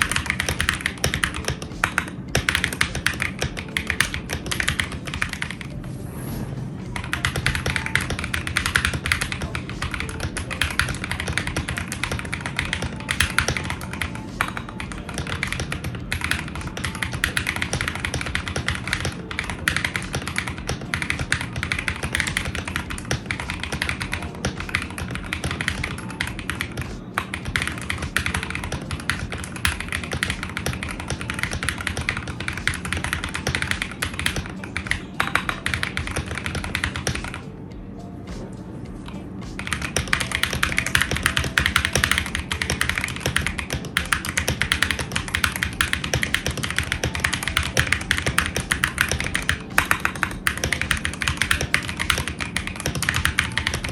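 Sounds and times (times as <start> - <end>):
mechanical keyboard typing: 0.0 - 5.8, 7.0 - 37.4, 39.5 - 53.9.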